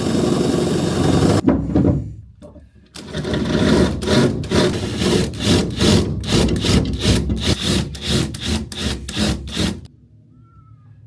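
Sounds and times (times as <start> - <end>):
hand saw sawing: 3.0 - 9.9.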